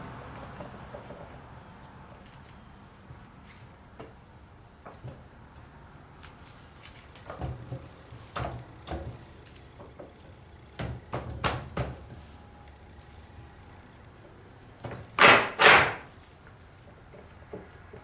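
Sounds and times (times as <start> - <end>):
metal clunks and knocks: 14.8 - 16.1.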